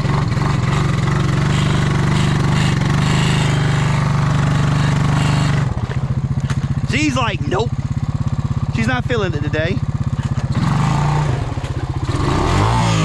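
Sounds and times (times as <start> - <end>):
quad engine revving under load: 0.0 - 13.0.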